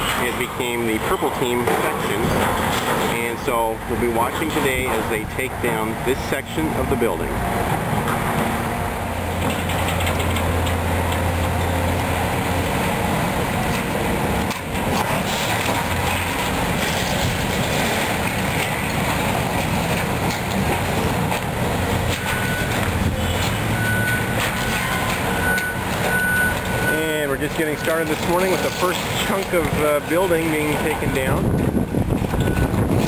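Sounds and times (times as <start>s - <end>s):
demolition machine engine drone: 0.0s - 33.0s
noisy clatter: 0.0s - 33.0s
backup alarm beeping: 22.1s - 32.8s.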